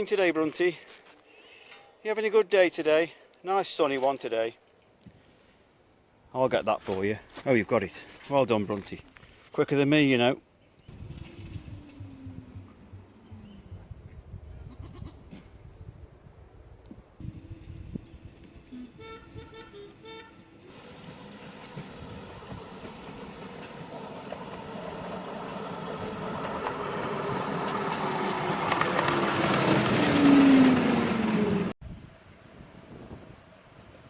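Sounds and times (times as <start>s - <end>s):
miniature train passing: 10.9s - 13.4s, 17.2s - 31.7s
miniature train whistle toots: 18.6s - 20.6s.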